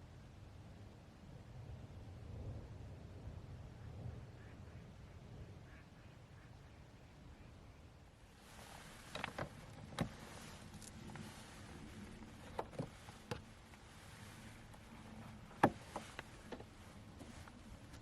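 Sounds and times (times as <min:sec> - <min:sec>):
soft hiss: 0:08.2 - 0:18.0.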